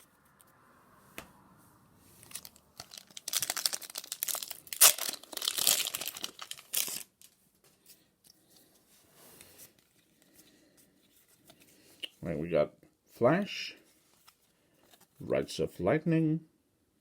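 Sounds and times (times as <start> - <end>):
foil wrapper crinkling and tearing: 2.2 - 7.3.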